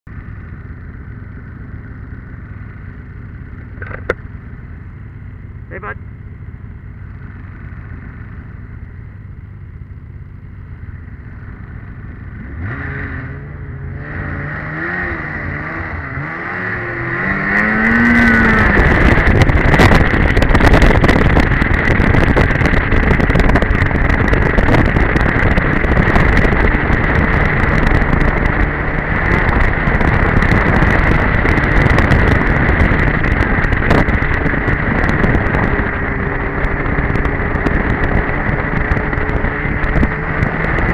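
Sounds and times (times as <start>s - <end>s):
snowmobile engine revving: 11.3s - 40.9s.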